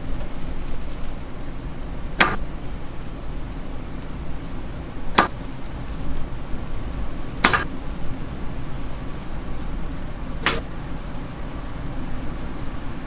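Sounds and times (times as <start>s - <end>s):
sharp knocks: 2.2s - 2.4s, 5.1s - 5.4s, 7.4s - 7.7s, 10.4s - 10.6s.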